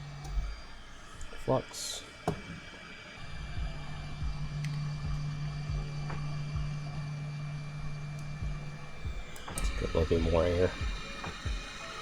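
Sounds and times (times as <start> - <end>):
hot air station blowing: 0.0 - 12.0
soft low thumps: 3.4 - 11.8
click: 4.6 - 4.8, 8.1 - 8.4.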